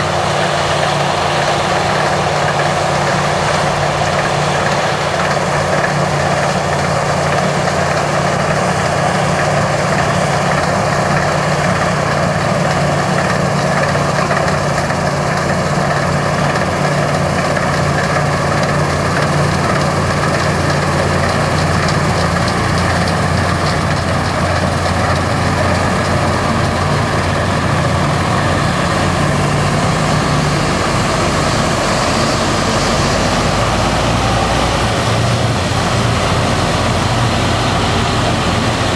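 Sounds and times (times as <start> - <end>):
combine harvester engine running: 0.0 - 38.9.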